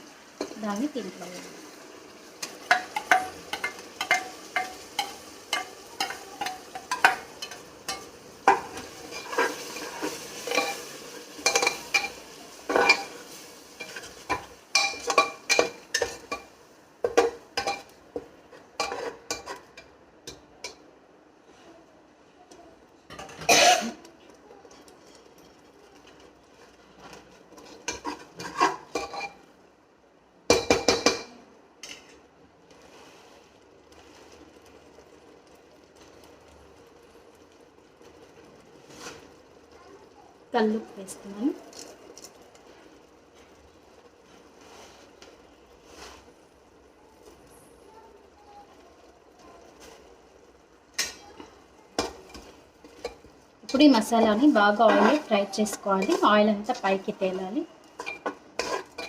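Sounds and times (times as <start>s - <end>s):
faint sizzle: 0.0s - 59.0s
spoon scraping a pan: 2.4s - 20.8s, 24.7s - 29.5s, 38.8s - 39.4s, 41.0s - 46.4s, 50.9s - 59.0s.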